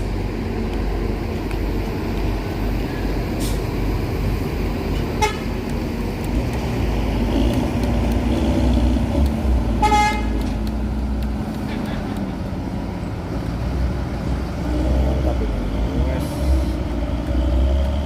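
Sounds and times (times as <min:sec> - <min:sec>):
bus diesel engine running: 0:00.0 - 0:18.0
bus horn toot: 0:05.2 - 0:05.5, 0:09.8 - 0:10.4.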